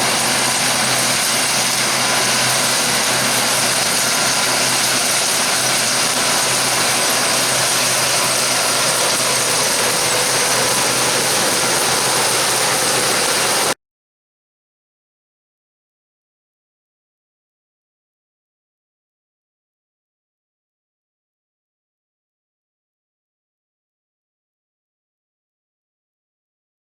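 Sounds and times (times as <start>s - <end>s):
harvest machinery engine drone: 0.0s - 13.8s.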